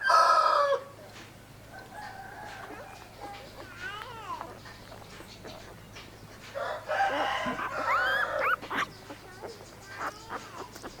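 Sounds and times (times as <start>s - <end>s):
rooster crowing: 0.0s - 0.9s, 1.8s - 3.0s, 6.6s - 8.6s
faint bird chirps: 2.7s - 11.0s.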